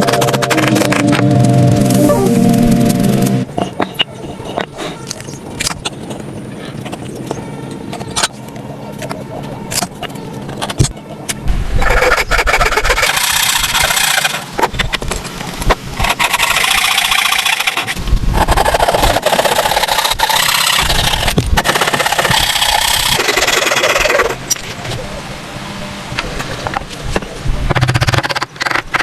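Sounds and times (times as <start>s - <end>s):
wood rasping under a tool: 16.0s - 24.3s.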